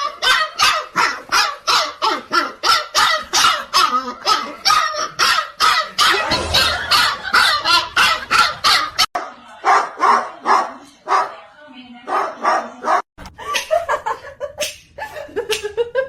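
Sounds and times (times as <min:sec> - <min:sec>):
dog barking rapidly: 0:00.0 - 0:06.4, 0:12.1 - 0:13.0.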